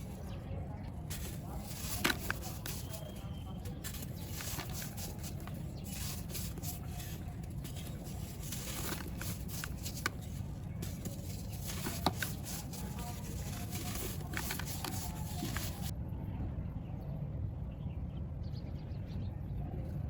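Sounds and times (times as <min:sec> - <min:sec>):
dry material crumbling and crackling: 0:01.0 - 0:15.9.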